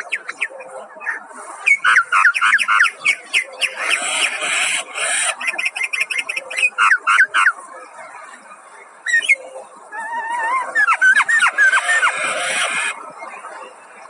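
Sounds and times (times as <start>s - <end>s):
mynas whistling calls: 10.0s - 13.0s.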